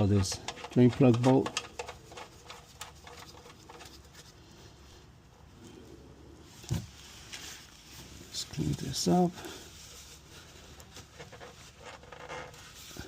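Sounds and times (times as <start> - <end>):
drain plug clicks and scrapes: 0.0 - 4.3.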